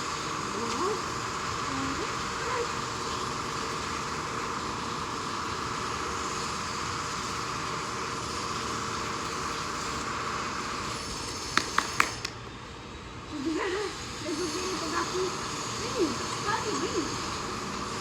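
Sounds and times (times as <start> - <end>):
jackhammer din: 0.0 - 12.4, 13.4 - 18.0
sharp clicks: 11.5 - 12.4.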